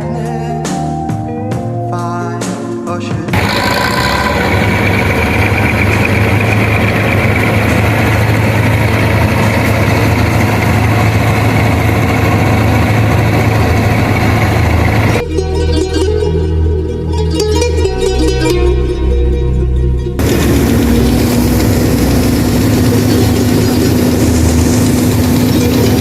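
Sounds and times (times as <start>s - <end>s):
diesel engine running steadily: 3.3s - 15.2s, 20.2s - 26.0s.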